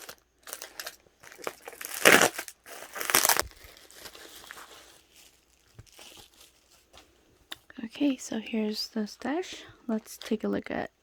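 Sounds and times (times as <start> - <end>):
packaging crinkling and crunching: 0.0 - 8.2.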